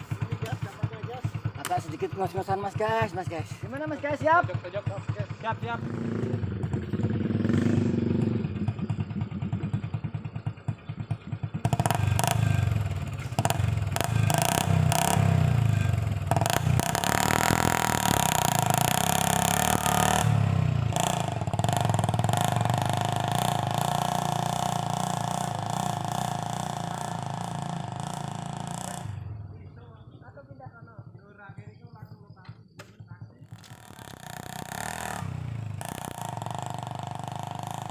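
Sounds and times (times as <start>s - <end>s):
motorcycle engine labouring: 0.0s - 37.9s.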